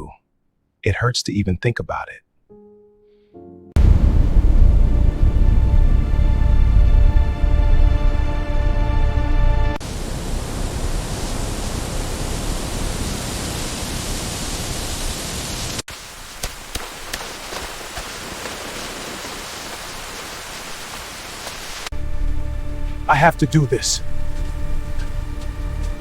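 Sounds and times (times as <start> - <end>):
music: 2.5 - 3.9, 4.5 - 9.8, 21.9 - 26.0
steady rushing hiss: 9.8 - 26.0.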